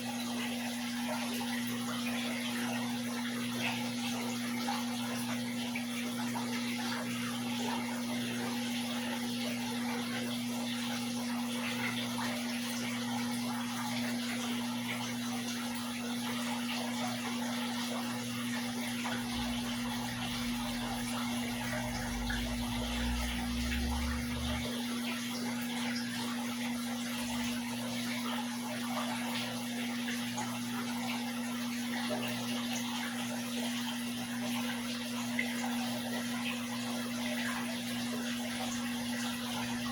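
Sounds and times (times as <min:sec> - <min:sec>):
aquarium water trickling: 0:00.0 - 0:39.9
constant low hum: 0:17.9 - 0:29.2.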